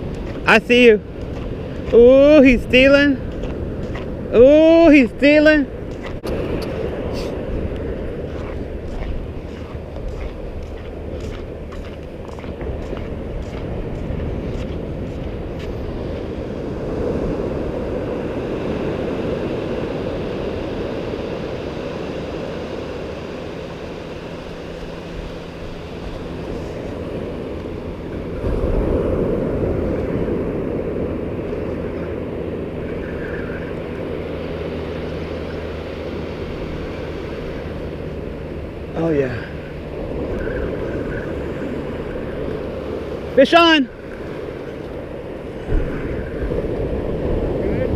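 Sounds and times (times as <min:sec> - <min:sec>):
ocean surf washing onto beach: 0:00.0 - 0:47.9
wind buffeting microphone: 0:00.0 - 0:47.9.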